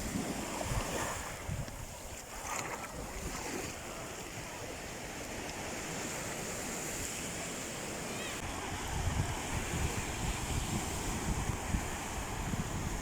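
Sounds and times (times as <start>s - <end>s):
wind buffeting microphone: 0.0s - 4.3s, 8.4s - 13.0s
sea waves on shore: 0.0s - 13.0s.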